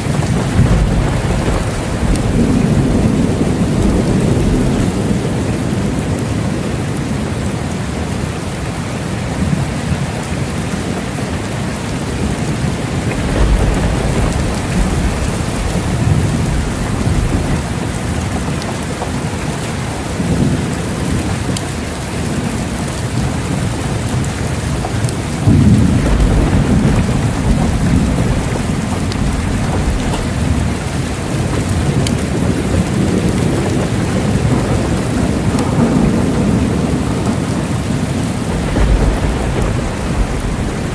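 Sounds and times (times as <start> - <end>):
thunder rolling: 0.0 - 6.7, 11.9 - 19.1, 22.2 - 40.9
steady rain: 0.0 - 40.9.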